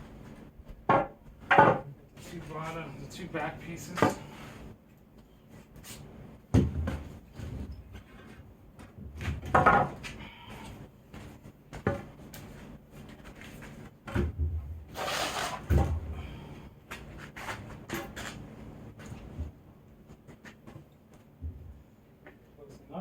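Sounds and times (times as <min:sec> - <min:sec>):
wooden boards knocking: 0:00.9 - 0:01.9
wood scraping: 0:14.9 - 0:15.8.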